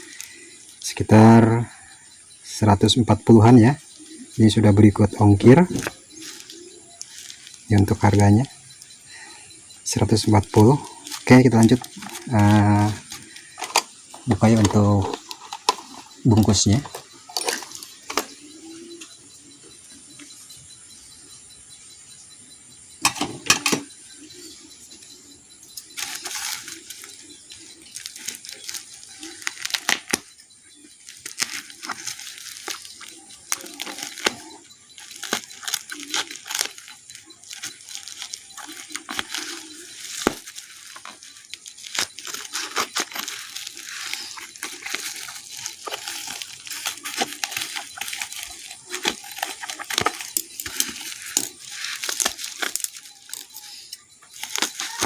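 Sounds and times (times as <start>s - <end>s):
packaging rustling and tearing: 5.6s - 8.2s, 10.5s - 18.3s, 25.9s - 30.3s, 31.0s - 53.7s, 54.3s - 55.0s.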